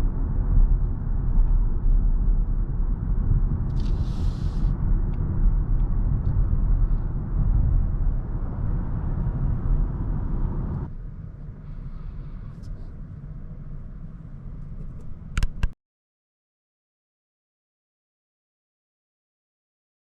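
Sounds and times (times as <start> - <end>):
road and tyre rumble in car: 0.0 - 15.8
brief hiss: 3.8 - 4.7.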